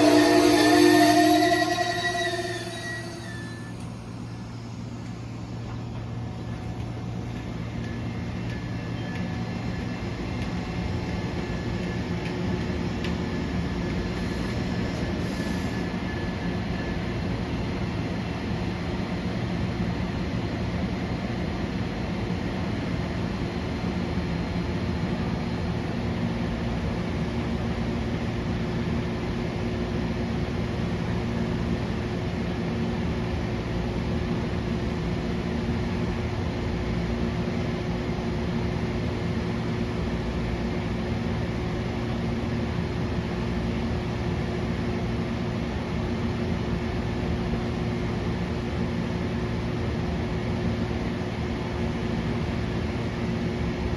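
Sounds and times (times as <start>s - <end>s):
diesel locomotive humming: 0.0s - 19.5s.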